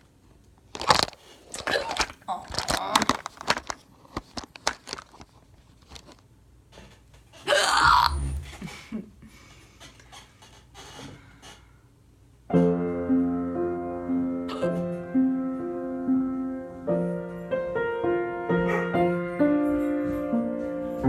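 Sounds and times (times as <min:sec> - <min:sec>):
piano music: 0:12.5 - 0:21.0.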